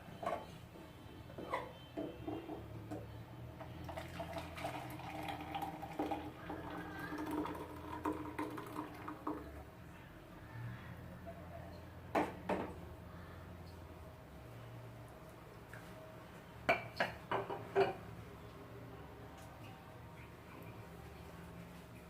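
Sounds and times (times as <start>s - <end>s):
liquid pouring and splashing: 3.8s - 9.6s.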